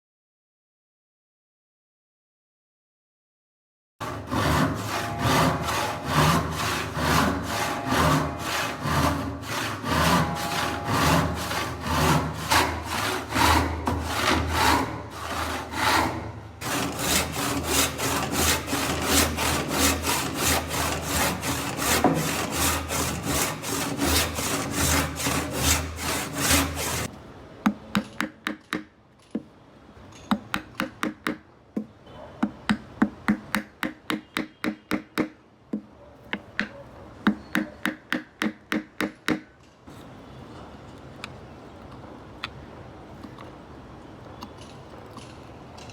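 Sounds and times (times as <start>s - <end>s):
hand saw cutting wood: 4.0s - 27.1s.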